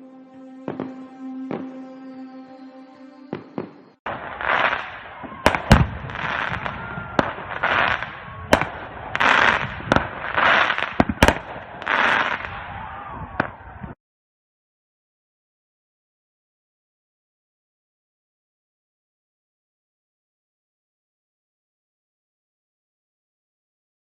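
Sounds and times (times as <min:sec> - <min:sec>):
fireworks bangs and cracks: 0:00.7 - 0:01.8, 0:03.3 - 0:13.9
fireworks hissing: 0:03.3 - 0:12.6.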